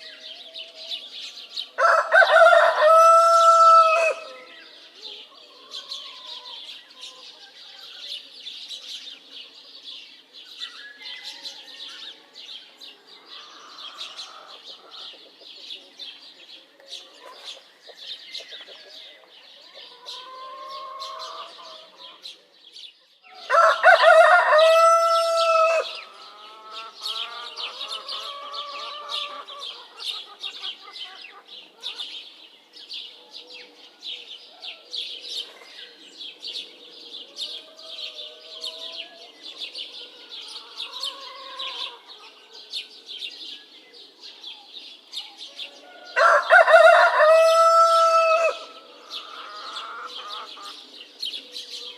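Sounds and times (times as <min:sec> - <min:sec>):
small birds chirping: 0:00.0 - 0:51.9
rooster crowing: 0:01.8 - 0:04.5, 0:23.3 - 0:29.6, 0:45.8 - 0:50.3
distant bird calls: 0:23.2 - 0:32.4, 0:34.4 - 0:51.9.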